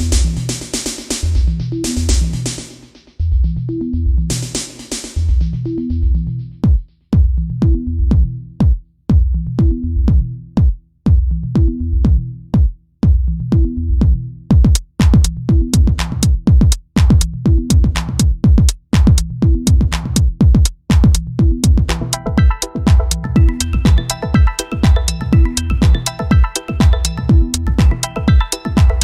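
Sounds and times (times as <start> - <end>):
electronic music with drum-machine beat: 0.0 - 29.0
bright percussion layer: 20.9 - 29.0.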